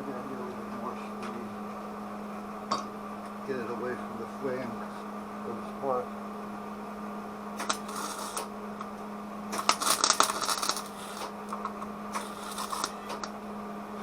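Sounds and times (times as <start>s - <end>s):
welder arc crackling: 7.5s - 13.4s.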